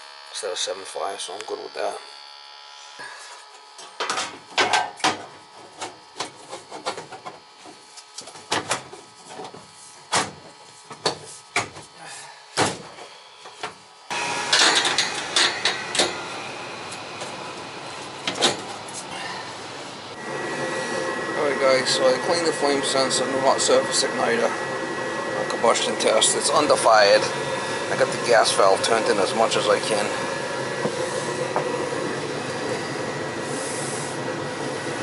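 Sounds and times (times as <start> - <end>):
mechanical running noise: 0.0 - 35.0.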